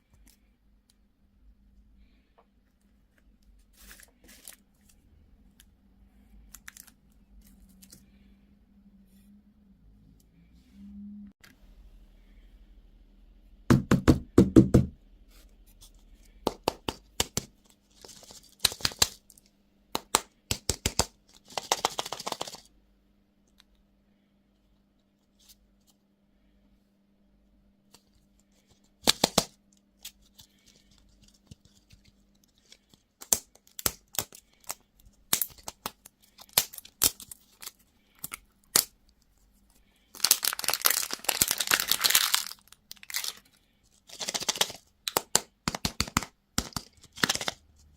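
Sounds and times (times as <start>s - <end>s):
wrapper tearing and crinkling: 30.2s - 38.9s, 40.1s - 45.3s
plastic packaging clicks and taps: 44.1s - 47.6s.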